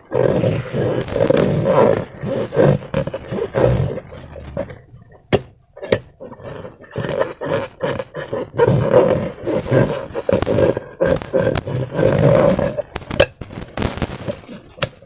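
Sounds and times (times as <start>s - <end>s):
rubber balloons creaking: 0.0s - 7.3s, 8.0s - 14.9s
slime squelching: 0.6s - 6.8s
sharp clicks: 10.2s - 14.2s.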